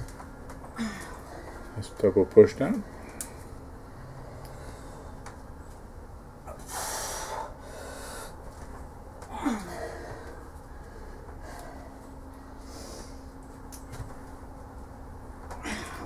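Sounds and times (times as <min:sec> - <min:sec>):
person exhaling with effort: 0:06.5 - 0:08.4, 0:09.3 - 0:10.4.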